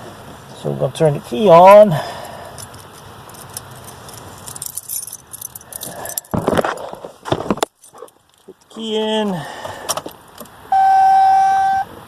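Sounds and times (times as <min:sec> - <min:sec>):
keys jangling: 0:02.6 - 0:06.3.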